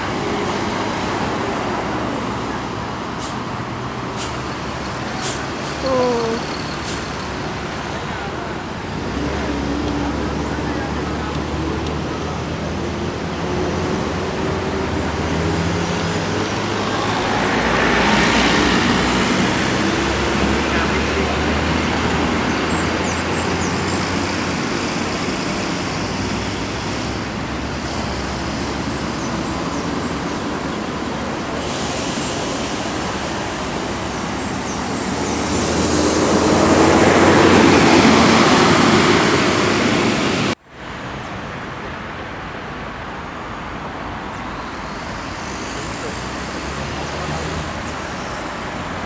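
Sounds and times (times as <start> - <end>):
diesel bus engines in traffic: 0.0 - 49.0
vehicle passing close: 8.1 - 40.6.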